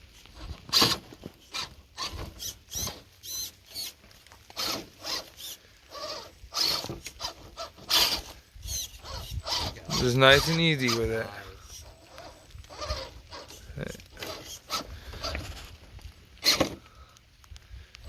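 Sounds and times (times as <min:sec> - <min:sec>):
scraping on ground: 0:00.0 - 0:16.9
electric motor and gears whining: 0:00.0 - 0:17.0.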